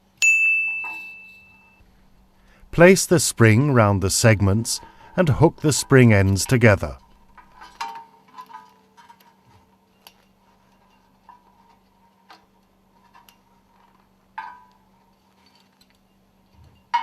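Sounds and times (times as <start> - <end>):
faint steady hum: 0.0 - 7.9
metal ring segments clinking: 0.2 - 1.8.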